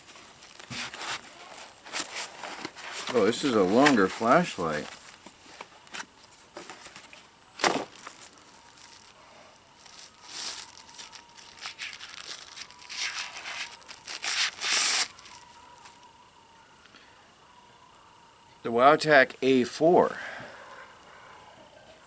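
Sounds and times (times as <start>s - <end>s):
packaging rustling and crinkling: 0.0s - 16.1s.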